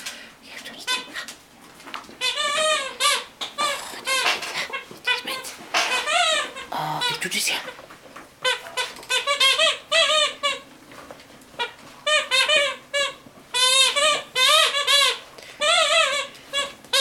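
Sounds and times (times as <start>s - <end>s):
rubber squeaky toy squeaking: 2.2s - 7.7s, 8.4s - 10.7s, 11.6s - 17.0s.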